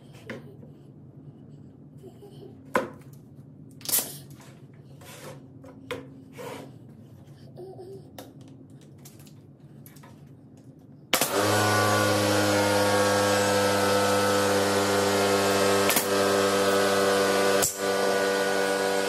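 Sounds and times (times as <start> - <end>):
power tool running: 11.1 - 19.0.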